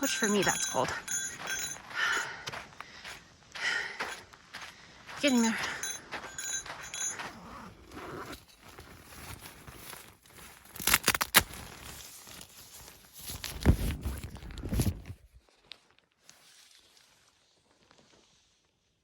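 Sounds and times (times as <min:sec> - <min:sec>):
rustling and handling noises: 0:05.3 - 0:18.3.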